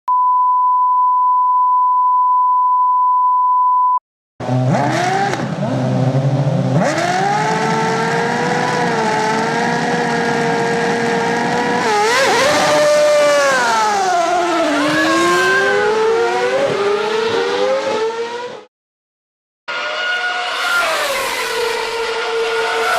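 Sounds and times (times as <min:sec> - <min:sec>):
steady high beep: 0:00.1 - 0:04.0
racing car engine at high revs: 0:04.4 - 0:18.7, 0:19.7 - 0:22.9.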